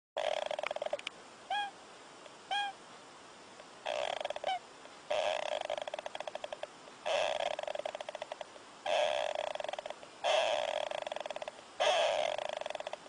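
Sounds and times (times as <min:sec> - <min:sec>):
animal snoring: 0:00.2 - 0:01.0, 0:03.9 - 0:13.0
short squeaky whistles: 0:01.5 - 0:01.7.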